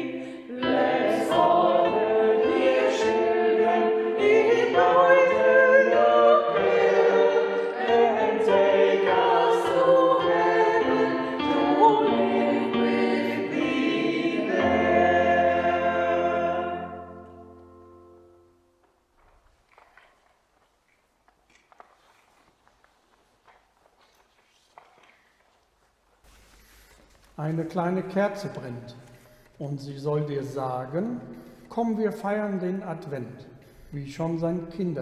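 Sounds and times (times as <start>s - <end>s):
choir singing: 0.0s - 18.3s.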